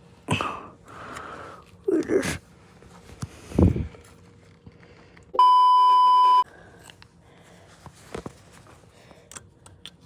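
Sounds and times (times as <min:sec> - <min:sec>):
censor bleep: 0:05.4 - 0:06.4.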